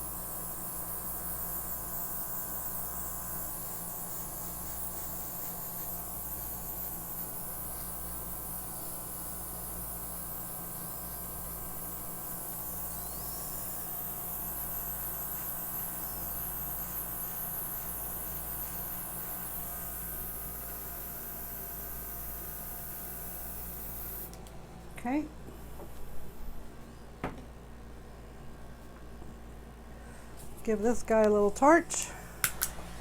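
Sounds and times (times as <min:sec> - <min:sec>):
airbrush compressor motor hum: 0:00.0 - 0:24.4
airbrush air hiss: 0:00.7 - 0:09.1, 0:09.9 - 0:21.1.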